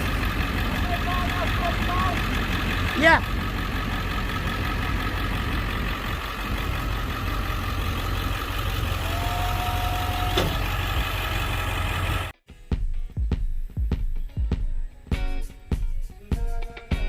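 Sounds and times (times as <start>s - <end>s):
engine idling: 0.0s - 12.3s.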